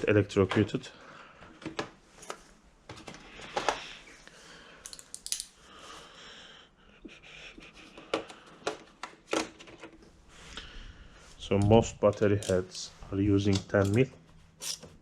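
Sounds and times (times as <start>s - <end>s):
hand tools clicking and knocking: 11.6s - 12.8s.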